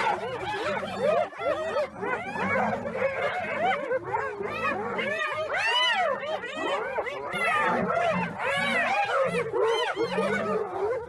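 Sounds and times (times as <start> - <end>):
pack of animals yipping: 0.0 - 11.0.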